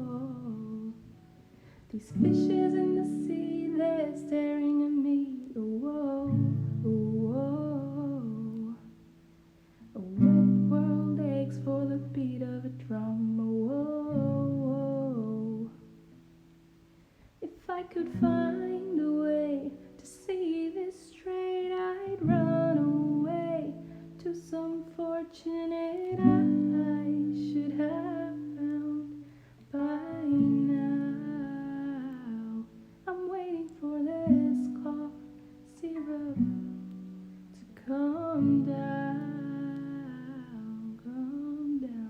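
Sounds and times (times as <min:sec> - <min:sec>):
acoustic guitar strummed chords: 0:21.6 - 0:24.2, 0:25.4 - 0:32.8.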